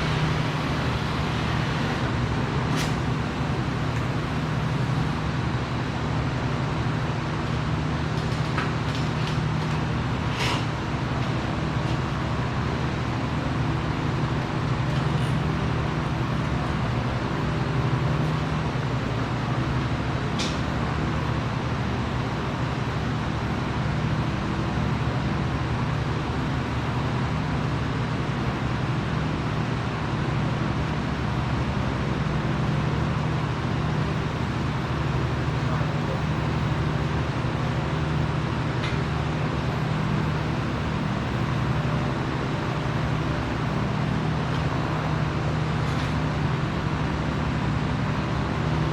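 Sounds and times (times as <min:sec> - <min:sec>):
machine hum: 0:00.0 - 0:06.5, 0:31.8 - 0:44.6.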